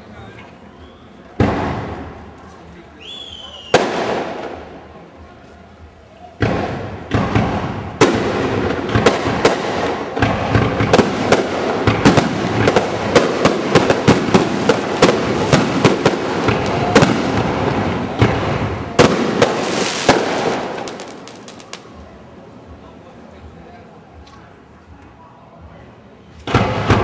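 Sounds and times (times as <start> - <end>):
fireworks bangs and crackling: 1.4 - 5.3, 6.4 - 22.2, 26.4 - 27.0.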